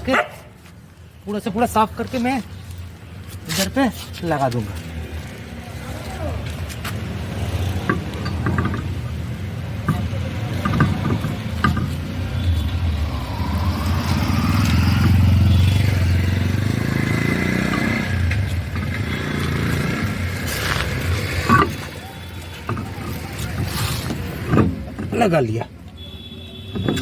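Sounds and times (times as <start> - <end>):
sharp clicks and knocks: 7.7 - 12.5, 17.6 - 25.2.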